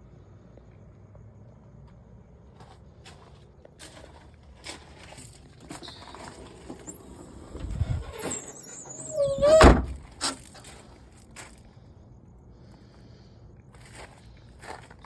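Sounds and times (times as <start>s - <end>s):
plastic squeal: 5.8s - 10.4s.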